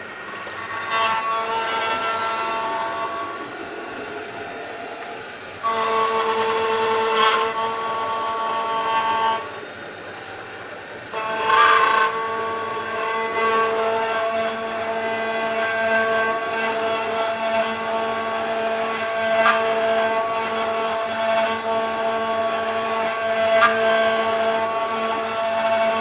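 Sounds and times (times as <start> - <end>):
cnc spindle whine: 0.0 - 26.0.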